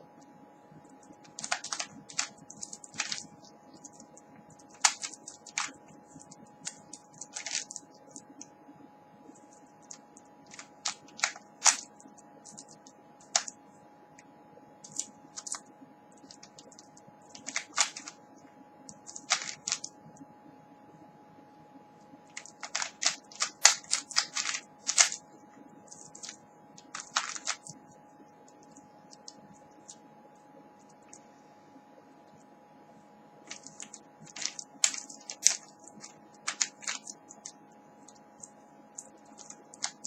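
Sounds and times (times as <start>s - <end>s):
puzzle cube layers clicking: 1.0s - 8.6s, 9.2s - 13.6s, 14.8s - 18.3s, 18.9s - 20.2s, 22.2s - 30.0s, 33.5s - 40.0s.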